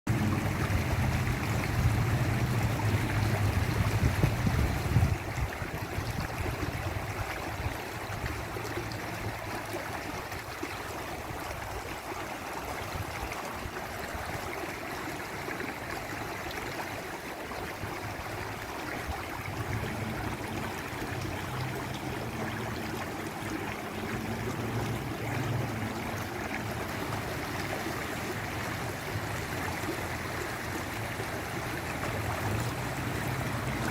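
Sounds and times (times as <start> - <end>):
low rumble: 0.1 - 5.2
waterfall rushing: 30.3 - 33.9.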